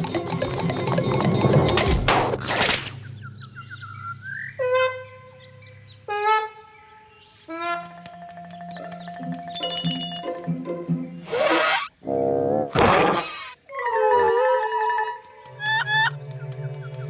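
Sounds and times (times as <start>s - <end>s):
music: 0.0s - 6.7s, 7.5s - 11.4s, 15.0s - 17.0s
rising squeaky chirp: 0.3s - 12.0s, 12.9s - 17.0s
horn-like honks: 4.6s - 6.8s, 7.5s - 8.4s
cartoon whooshes: 11.3s - 12.0s, 12.7s - 13.6s.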